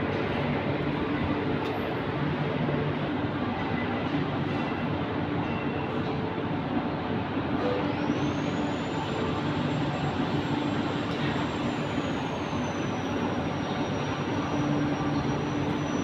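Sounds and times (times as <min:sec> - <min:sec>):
faint high whine: 0:07.6 - 0:16.0.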